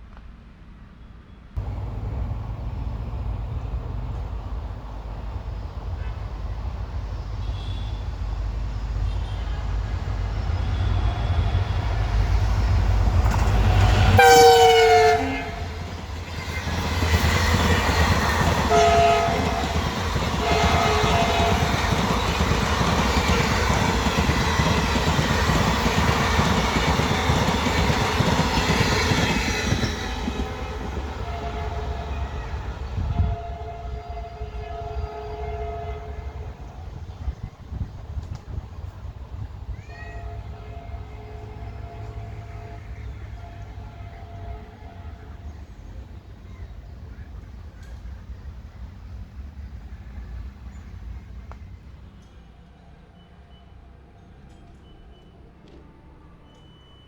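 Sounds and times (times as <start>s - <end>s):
train horn blaring: 1.6s - 37.4s, 39.8s - 46.0s
train coaches clickety-clack: 1.6s - 53.0s, 53.6s - 57.0s
diesel locomotive engine rumble: 1.6s - 57.0s.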